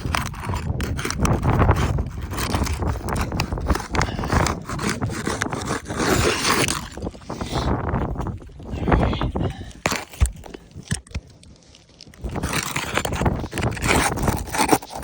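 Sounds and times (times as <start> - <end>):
clicks and knocks of fasteners: 0.0 - 7.0
roof shingles scraping: 0.0 - 8.6, 11.6 - 15.0.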